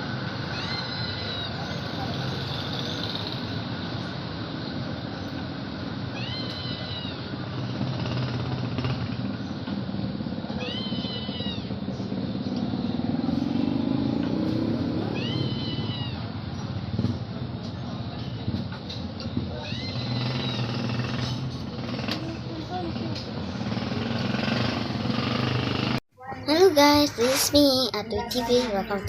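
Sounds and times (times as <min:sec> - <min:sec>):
animal cries: 0:00.5 - 0:02.7, 0:06.0 - 0:07.4, 0:10.5 - 0:12.1, 0:14.4 - 0:16.3, 0:19.5 - 0:20.9.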